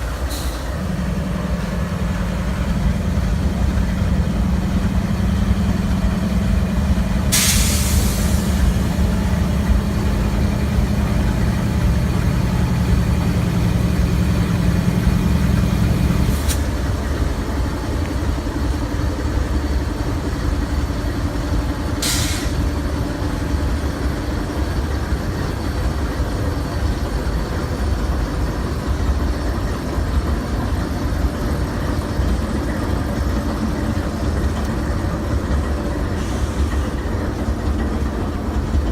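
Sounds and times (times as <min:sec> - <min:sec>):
diesel locomotives idling: 0:00.0 - 0:38.9
air hissing: 0:07.2 - 0:09.8, 0:22.0 - 0:22.6.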